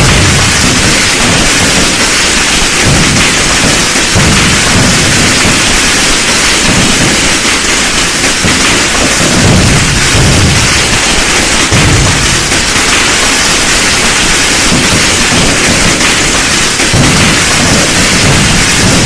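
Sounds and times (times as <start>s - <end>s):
firecrackers crackling: 0.0s - 19.0s
deep booms: 9.4s - 13.1s.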